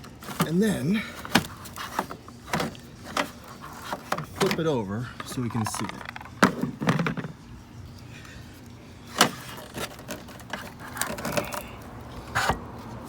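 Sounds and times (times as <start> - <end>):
plastic housing clicks and knocks: 5.2 - 7.4.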